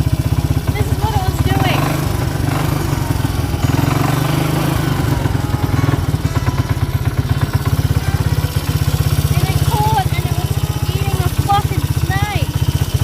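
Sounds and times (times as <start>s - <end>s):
quad bike engine chugging: 0.0s - 13.0s.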